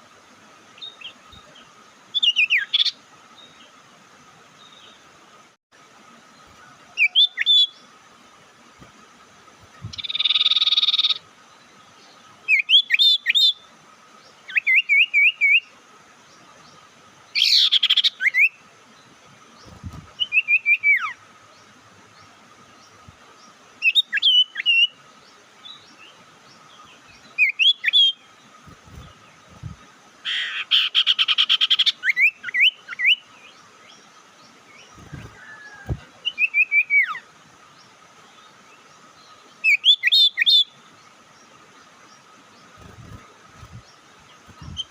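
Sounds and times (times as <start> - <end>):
faint steady whine: 0.0 - 44.9
bird chirping phrases: 9.6 - 44.9.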